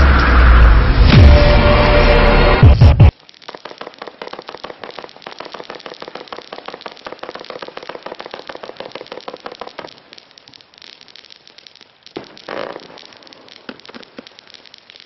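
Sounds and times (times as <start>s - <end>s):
fireworks launch thuds: 2.8s - 10.0s
fireworks soft pops: 3.1s - 15.0s.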